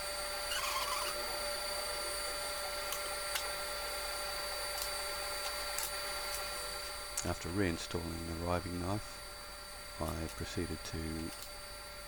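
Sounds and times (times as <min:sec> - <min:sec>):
table saw blade spinning: 0:00.4 - 0:01.4.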